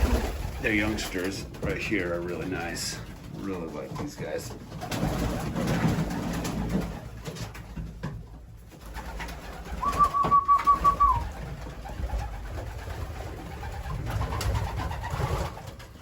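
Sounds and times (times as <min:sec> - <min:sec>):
pigeons cooing: 0:08.9 - 0:15.9
high rapidly pulsed call: 0:09.8 - 0:11.2.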